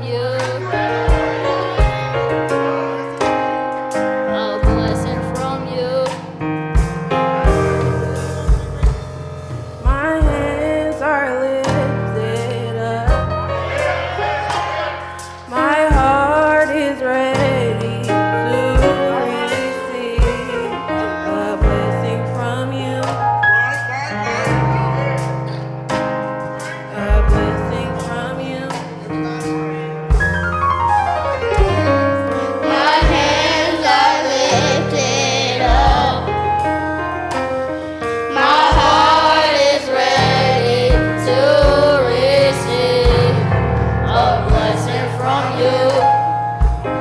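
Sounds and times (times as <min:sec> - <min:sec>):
person singing: 0:00.0 - 0:03.5, 0:13.8 - 0:25.3, 0:26.6 - 0:29.5
gospel band playing: 0:00.0 - 0:47.0.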